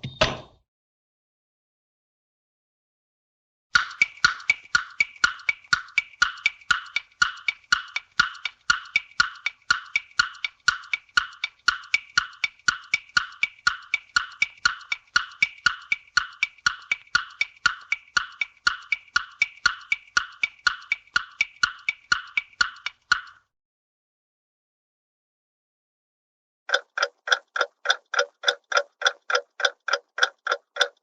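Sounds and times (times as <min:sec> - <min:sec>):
hollow wood block knocks: 0:26.7 - 0:31.0.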